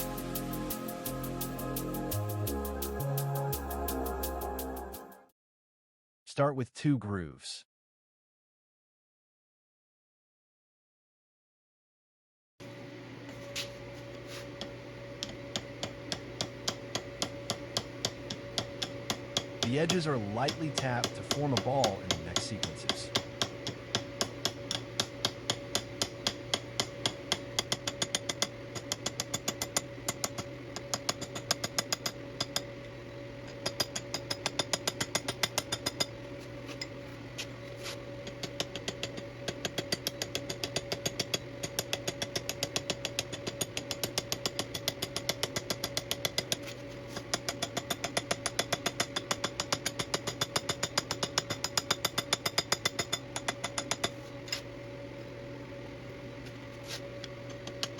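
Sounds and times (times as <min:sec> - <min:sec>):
steady machine hum: 0:00.0 - 0:05.1, 0:12.6 - 0:57.9
hammer tapping metal tube: 0:15.2 - 0:32.6, 0:33.6 - 0:36.1, 0:38.3 - 0:54.2.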